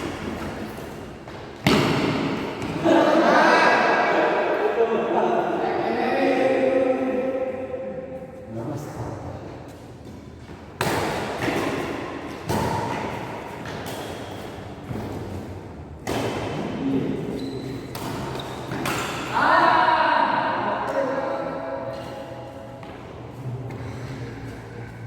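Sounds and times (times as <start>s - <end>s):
rackets hitting shuttlecock: 1.3s - 2.8s, 10.8s - 15.3s, 16.0s - 16.8s.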